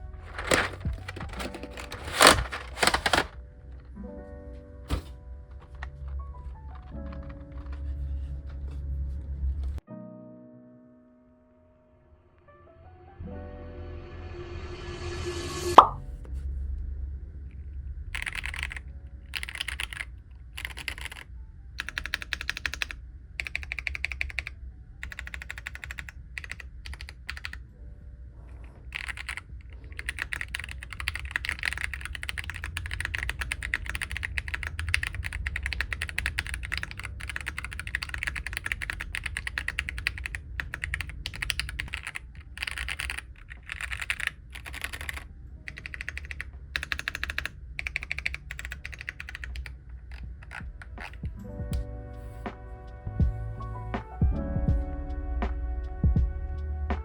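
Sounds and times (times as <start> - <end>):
mechanical keyboard typing: 0.0 - 3.4, 5.6 - 7.9, 18.2 - 27.6, 28.9 - 51.4
low hum: 12.8 - 19.5.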